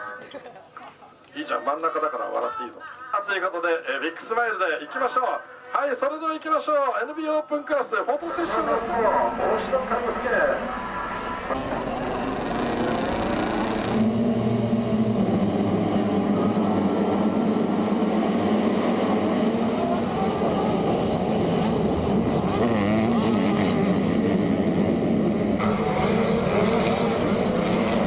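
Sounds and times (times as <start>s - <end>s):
motocross bike engines revving: 9.9s - 28.0s.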